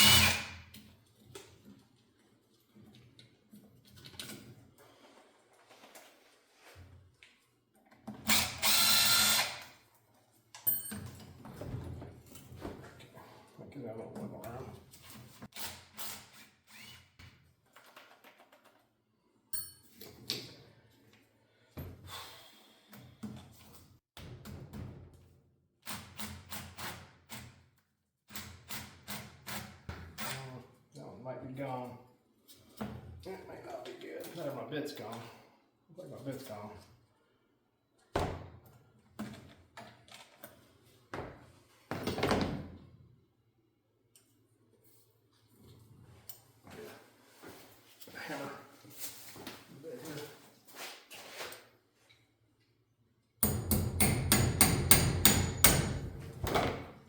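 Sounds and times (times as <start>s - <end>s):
hand tool on metal parts: 53.4s - 56.6s.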